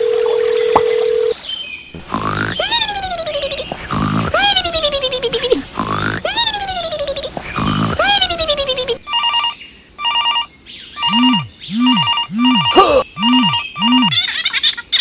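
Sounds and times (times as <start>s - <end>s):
electronic phone ringing: 0.0s - 1.3s, 9.0s - 14.2s.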